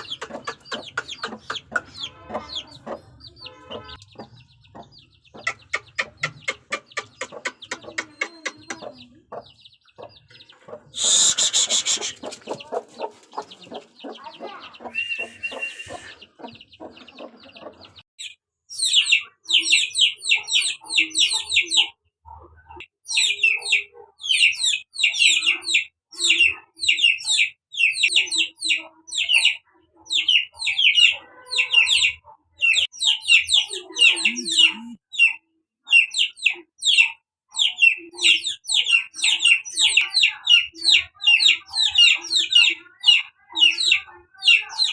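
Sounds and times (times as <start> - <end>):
high chirps: 0.0 - 12.6, 14.0 - 16.9
chickens clucking: 0.0 - 18.0, 18.8 - 44.9.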